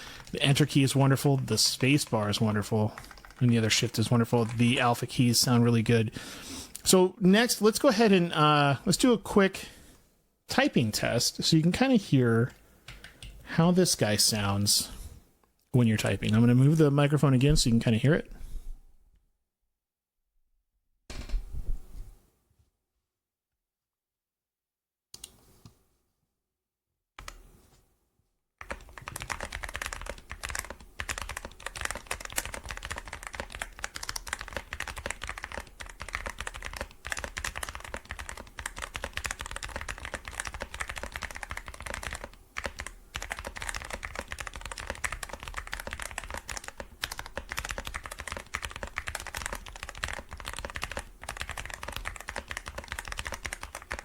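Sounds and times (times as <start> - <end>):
mechanical keyboard typing: 0.2 - 4.9, 28.6 - 54.0.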